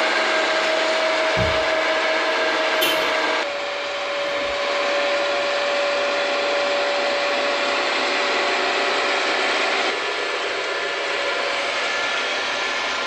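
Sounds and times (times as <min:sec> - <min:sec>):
steady machine whine: 0:00.0 - 0:13.0.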